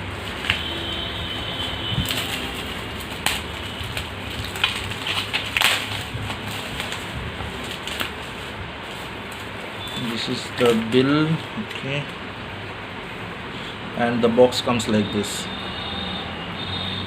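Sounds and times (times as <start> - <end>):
packaging crinkling: 0.1 - 11.0.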